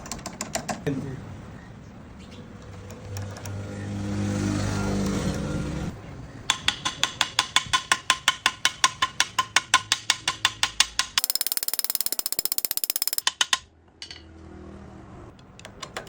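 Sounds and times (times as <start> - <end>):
fast even ticking: 11.0 - 13.5.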